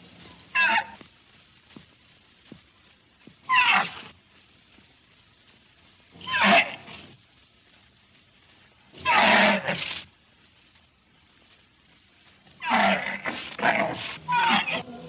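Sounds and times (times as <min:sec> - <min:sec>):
animal calling harshly: 0:00.5 - 0:01.0, 0:03.4 - 0:04.0, 0:06.2 - 0:06.9, 0:09.0 - 0:10.0, 0:12.6 - 0:15.0.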